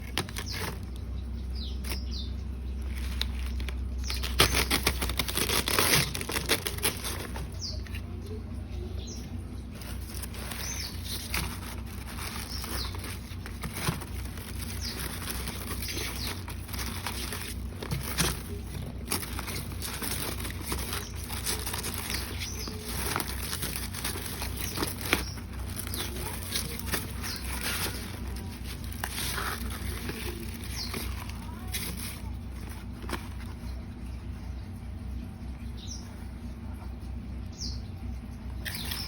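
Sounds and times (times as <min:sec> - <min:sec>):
packaging rustling and crinkling: 0:00.0 - 0:08.1, 0:09.6 - 0:33.8, 0:38.6 - 0:39.0
high squeaks: 0:09.8 - 0:32.8.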